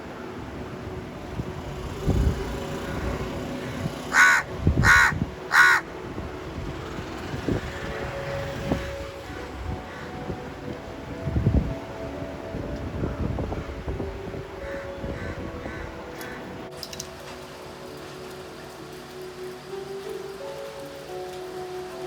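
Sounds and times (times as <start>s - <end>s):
crow cawing: 4.1s - 5.9s, 14.6s - 16.5s.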